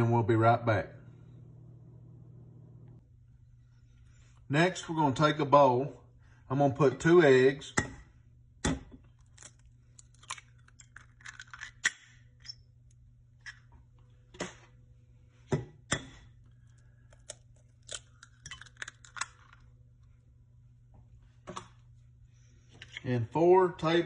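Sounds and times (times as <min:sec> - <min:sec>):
steady low hum: 0:00.0 - 0:24.0
eggs cracking on a bowl rim: 0:17.1 - 0:19.6.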